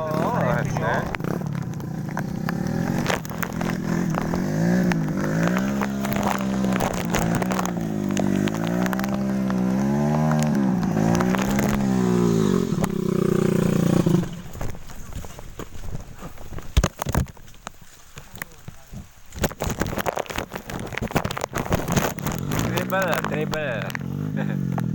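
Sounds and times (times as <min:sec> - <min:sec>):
off-road vehicle engine revving: 0:00.0 - 0:14.6, 0:21.6 - 0:24.9.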